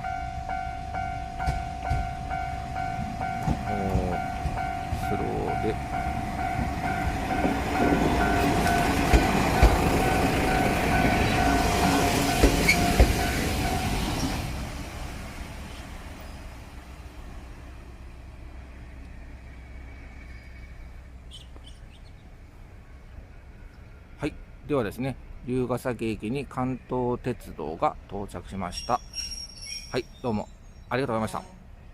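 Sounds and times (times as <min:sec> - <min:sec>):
level crossing alarm ringing: 0:00.0 - 0:14.2
railcar running: 0:00.0 - 0:31.9
railcar wheels knocking on rail joints: 0:01.4 - 0:14.3.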